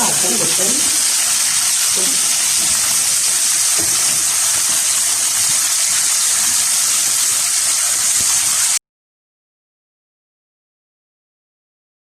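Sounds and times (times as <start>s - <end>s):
beef sizzling in a pot: 0.0s - 8.8s.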